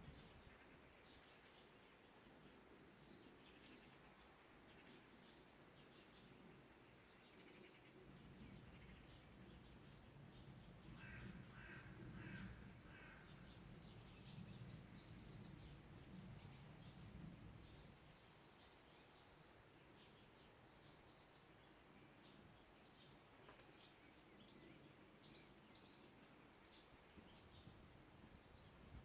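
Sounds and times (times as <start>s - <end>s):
low repeated bird calls: 7.3s - 19.2s.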